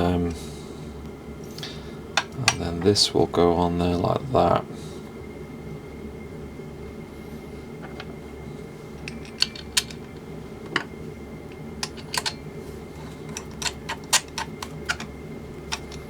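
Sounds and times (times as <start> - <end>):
steady low hum: 0.0 - 16.0
small metal parts clicking: 9.0 - 10.1, 11.5 - 12.4, 13.2 - 16.0.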